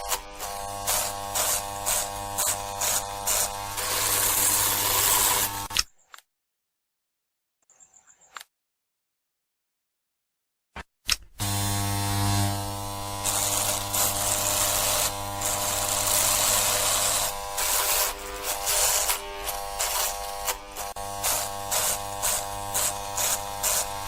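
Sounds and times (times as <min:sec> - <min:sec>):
electric shaver buzzing: 0:00.0 - 0:05.8, 0:11.4 - 0:24.0.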